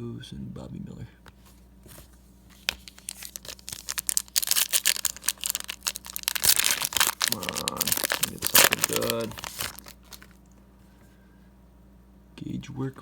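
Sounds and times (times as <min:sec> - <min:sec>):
foil wrapper crinkling and tearing: 0:02.5 - 0:10.4.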